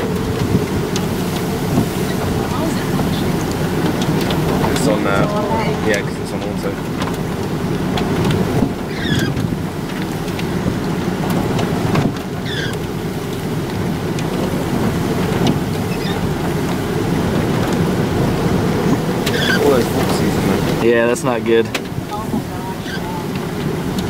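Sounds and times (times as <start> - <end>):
storm wind buffeting microphone: 0.0 - 24.0.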